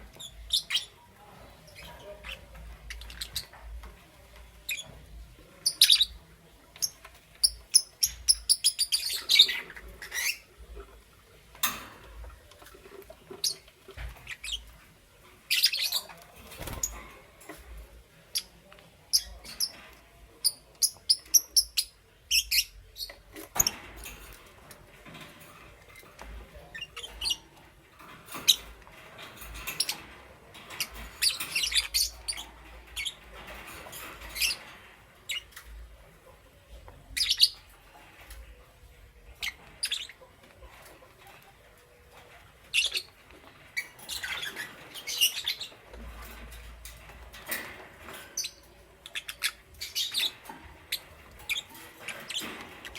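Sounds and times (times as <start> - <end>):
lovebirds chirping: 0.0 - 19.8, 20.4 - 25.1, 25.7 - 40.8, 42.0 - 52.9
soft bird chattering: 4.6 - 10.8, 18.3 - 24.1, 37.0 - 38.4, 42.7 - 46.2, 48.3 - 52.9.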